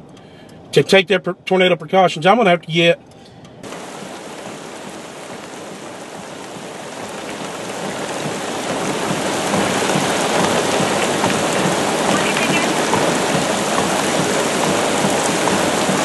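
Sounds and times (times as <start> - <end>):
heavy rain pouring: 3.6 - 16.0.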